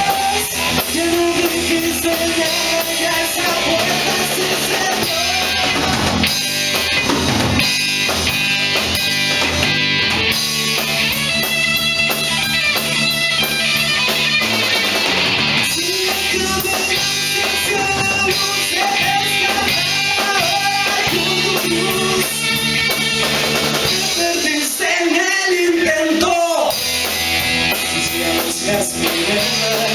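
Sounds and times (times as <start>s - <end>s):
rock band playing: 0.0s - 29.9s.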